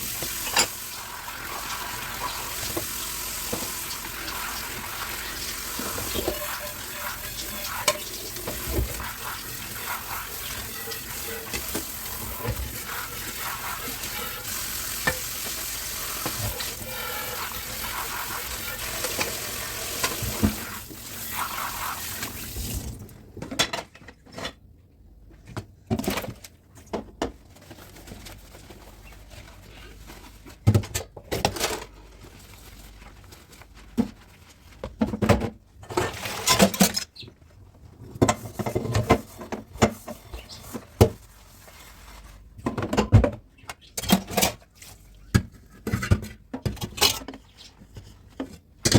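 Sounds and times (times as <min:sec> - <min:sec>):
tap water running into sink: 0:00.0 - 0:23.0
dishes clinking and knocking: 0:05.9 - 0:09.1.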